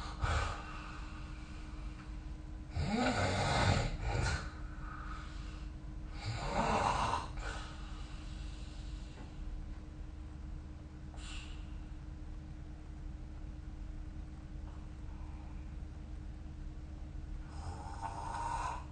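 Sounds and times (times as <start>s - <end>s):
faint steady hum: 0.0s - 18.9s
person snoring: 2.7s - 4.6s, 6.2s - 7.8s, 17.5s - 18.9s.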